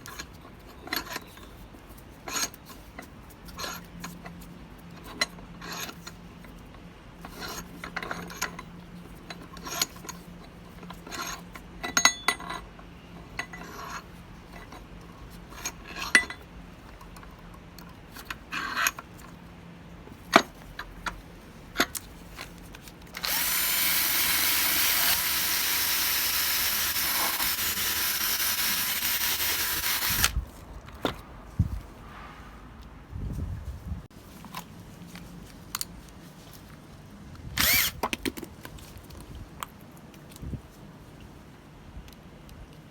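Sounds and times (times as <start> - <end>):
power tool running: 23.2 - 30.4, 37.6 - 38.0.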